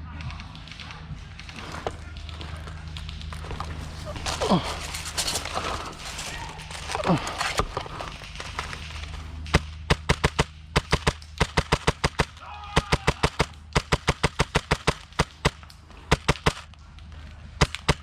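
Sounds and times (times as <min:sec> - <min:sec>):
airsoft gunfire: 0:03.4 - 0:16.8, 0:17.6 - 0:18.0.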